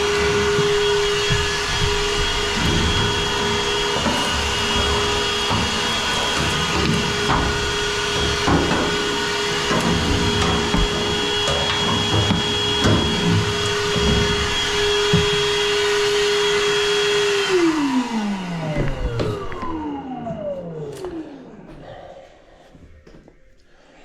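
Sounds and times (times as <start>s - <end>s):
knocks and clatters: 0.0s - 16.0s
vacuum motor winding down: 0.0s - 21.7s
vacuum running: 0.0s - 22.1s.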